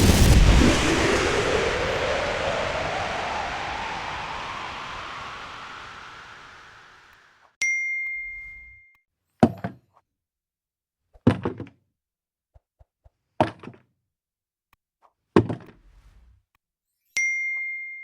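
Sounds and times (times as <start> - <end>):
ringing ding: 17.2 - 18.0.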